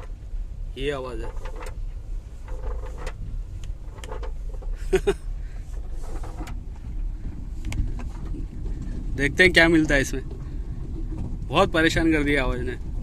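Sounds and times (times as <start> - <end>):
low road rumble: 0.0 - 13.0
loose battery sliding and rattling: 1.1 - 11.5.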